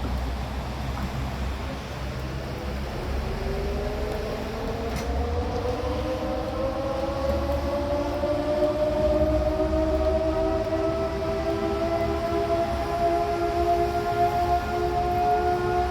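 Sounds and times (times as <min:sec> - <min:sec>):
siren wailing: 0:07.8 - 0:15.9.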